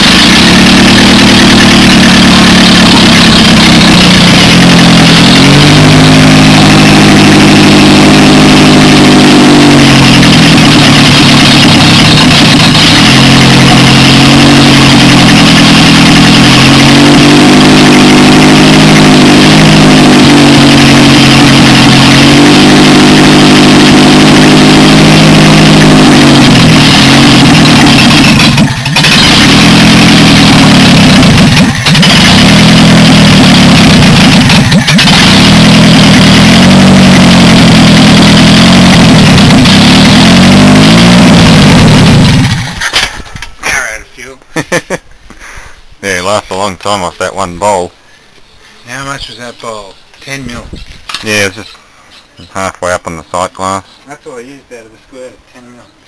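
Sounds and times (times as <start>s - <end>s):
car engine revving: 0.0s - 43.2s.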